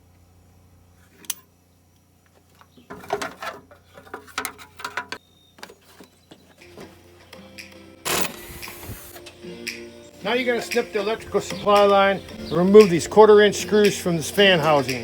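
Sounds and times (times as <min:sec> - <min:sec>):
faint steady hum: 0:00.0 - 0:05.7
hand tools clicking and knocking: 0:02.5 - 0:06.9.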